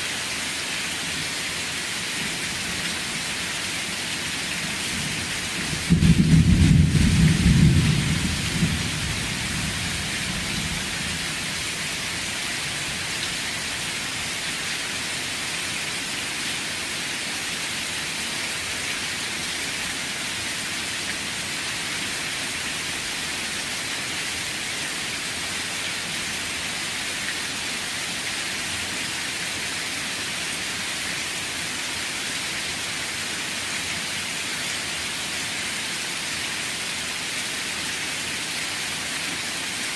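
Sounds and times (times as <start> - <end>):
steady rain: 0.0 - 39.9
thunder clap rumbling: 5.8 - 10.7.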